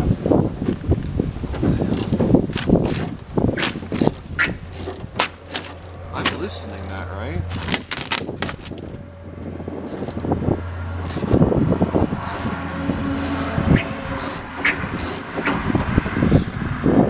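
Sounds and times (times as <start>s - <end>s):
rustling and handling noise: 1.9s - 8.9s, 9.9s - 10.3s, 11.1s - 11.4s, 12.2s - 12.6s
socket ratchet clicking: 2.0s - 2.2s, 2.9s - 3.2s, 3.9s - 6.0s, 6.6s - 7.1s, 9.9s - 10.3s, 11.1s - 11.4s, 12.2s - 12.6s, 13.2s - 13.6s, 14.2s - 15.4s.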